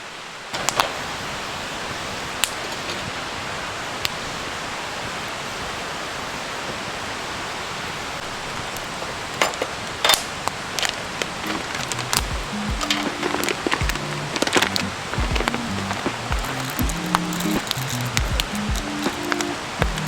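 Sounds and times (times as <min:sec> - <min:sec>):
rushing hiss of fire: 0:00.0 - 0:20.0
campfire crackling: 0:00.6 - 0:06.4, 0:08.1 - 0:20.0
burning wood popping: 0:08.7 - 0:20.0.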